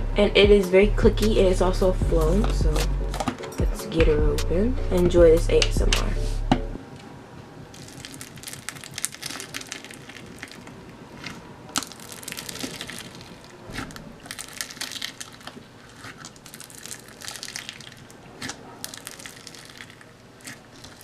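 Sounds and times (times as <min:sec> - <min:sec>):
slime squished by hand: 0:07.7 - 0:21.0.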